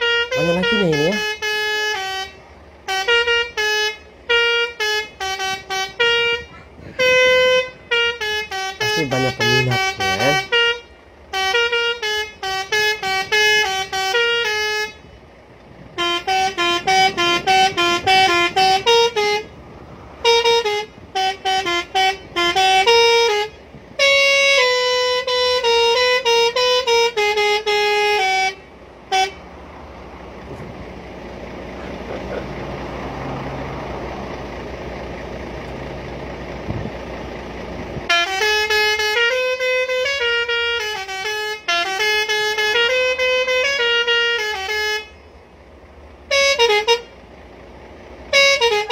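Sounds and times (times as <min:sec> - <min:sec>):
musical air horn melody: 0:00.0 - 0:15.1, 0:16.0 - 0:29.5, 0:38.1 - 0:45.2, 0:46.3 - 0:47.2, 0:48.3 - 0:48.9
steady low rumble: 0:00.2 - 0:40.8, 0:45.0 - 0:48.9.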